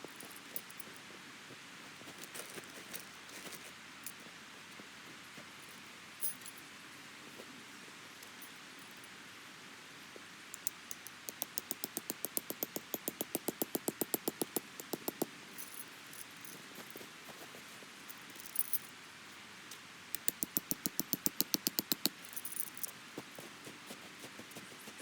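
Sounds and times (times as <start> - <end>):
rapid clicks: 10.6 - 15.3, 20.2 - 22.2.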